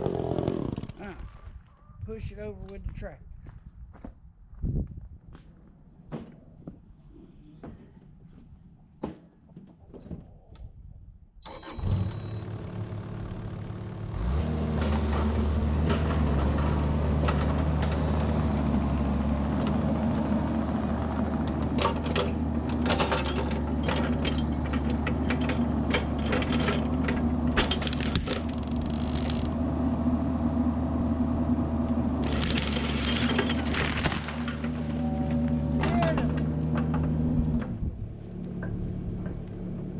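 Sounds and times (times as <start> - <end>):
diesel engine starting and running: 11.4 - 39.9.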